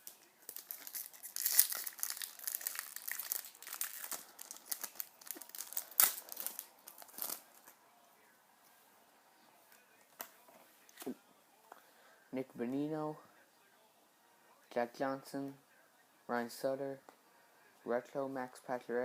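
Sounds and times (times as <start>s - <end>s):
plastic wrapper crinkling: 0.0s - 7.8s.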